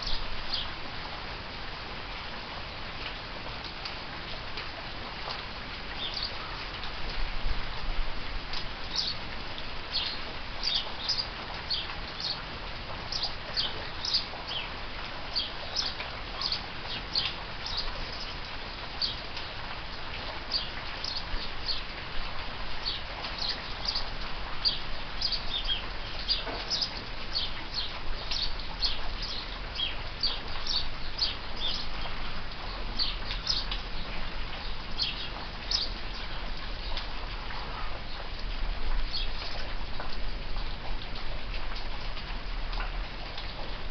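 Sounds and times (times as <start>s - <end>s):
rain falling: 0.0s - 43.9s
sparrows chirping: 8.9s - 9.2s, 9.9s - 12.4s, 13.1s - 14.7s, 15.3s - 18.3s, 22.8s - 32.0s, 32.7s - 37.0s.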